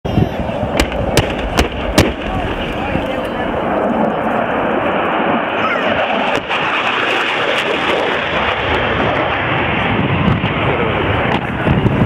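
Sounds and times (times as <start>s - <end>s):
jet engines rushing: 0.1s - 12.0s.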